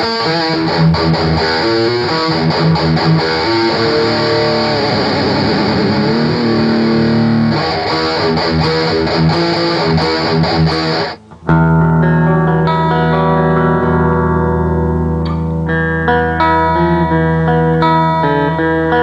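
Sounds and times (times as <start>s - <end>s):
distorted electric guitar: 0.0s - 19.0s.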